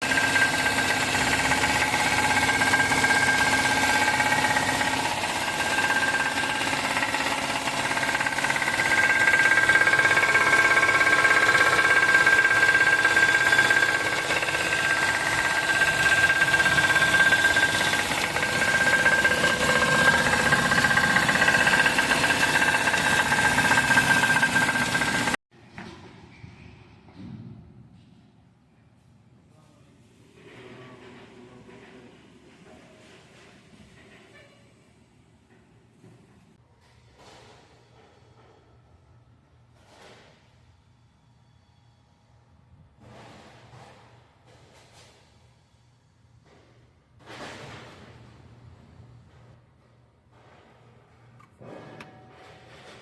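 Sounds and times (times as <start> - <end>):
rapid engine knock: 0.0 - 25.4.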